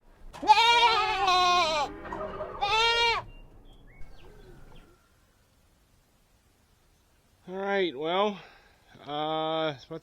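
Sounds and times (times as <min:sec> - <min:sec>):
goat bleating: 0:00.3 - 0:03.3.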